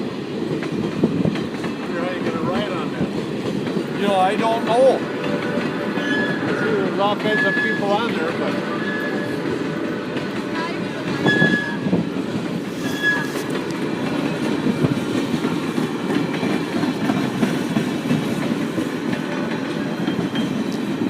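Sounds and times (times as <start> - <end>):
train wheels rumbling on rail: 0.0 - 21.0
wheel squeak: 6.0 - 8.0, 8.7 - 9.4, 11.1 - 11.9, 12.8 - 13.6.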